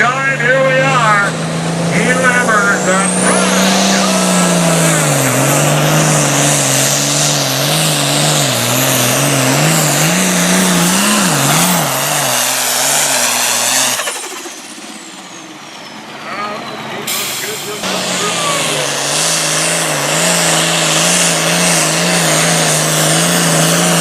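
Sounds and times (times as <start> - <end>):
tractor diesel engine at full throttle: 0.0 - 24.0
high turbo whistle: 6.1 - 16.3.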